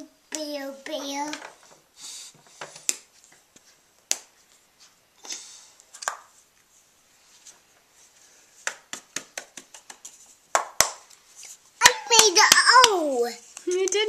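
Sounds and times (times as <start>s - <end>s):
soft rustle: 3.1s - 8.6s.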